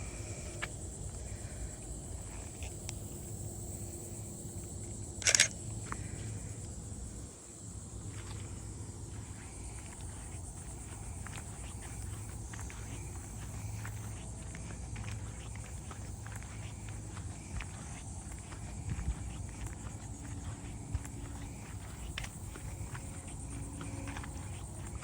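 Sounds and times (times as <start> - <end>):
high-pitched insect drone: 0.0 - 25.0
faint footsteps: 8.0 - 25.0.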